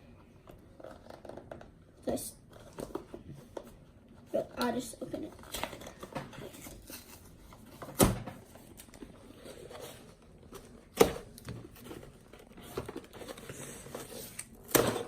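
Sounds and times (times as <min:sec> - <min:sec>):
cardboard box rustling: 0:05.3 - 0:14.4.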